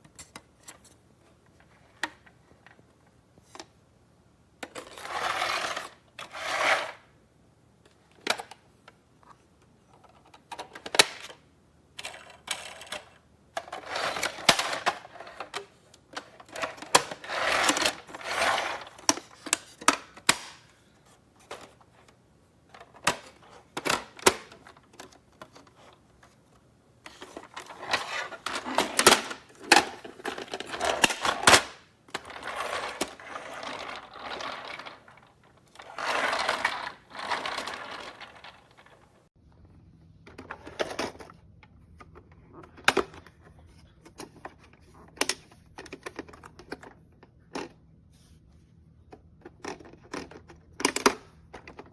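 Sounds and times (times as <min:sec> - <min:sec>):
plastic toy clicking and rattling: 0:12.0 - 0:20.6, 0:27.1 - 0:39.1, 0:49.5 - 0:51.9.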